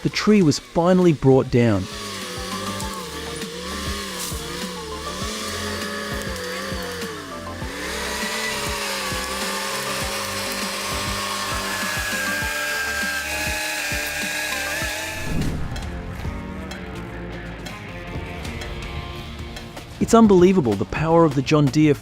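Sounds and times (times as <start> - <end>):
heavy machine engine under load: 0.0 - 16.0
background music: 0.0 - 22.0.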